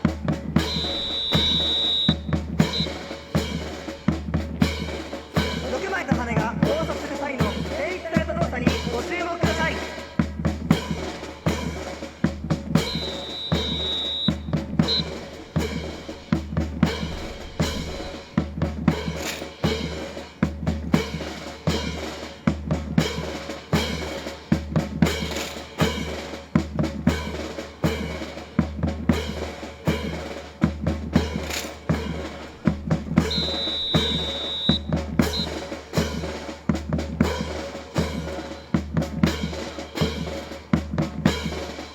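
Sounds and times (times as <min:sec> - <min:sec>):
marching drum music: 0:00.0 - 0:41.9
short high tone: 0:00.6 - 0:03.0, 0:33.2 - 0:35.6.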